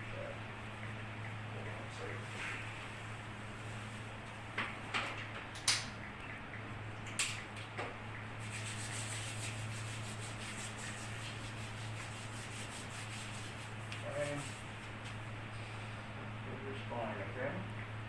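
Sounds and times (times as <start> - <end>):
hands rubbing on back: 8.4 - 15.4.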